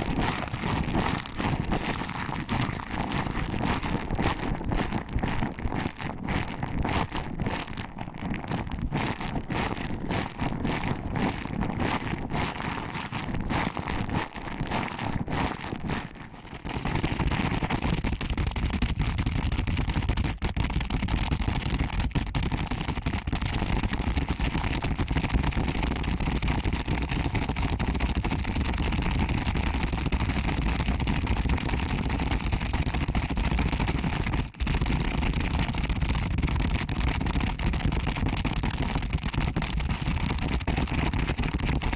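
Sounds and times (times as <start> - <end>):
fingers rubbing microphone: 0.0 - 20.4.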